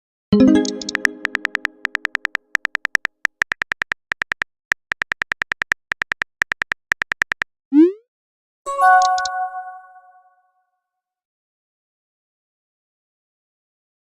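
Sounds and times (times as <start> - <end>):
keyboard typing clicks: 0.4 - 7.5, 8.8 - 9.6.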